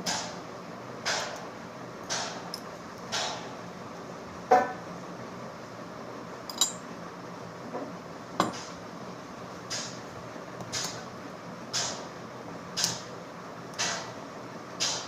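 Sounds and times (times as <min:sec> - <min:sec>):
metal tools clinking: 0:06.5 - 0:06.8.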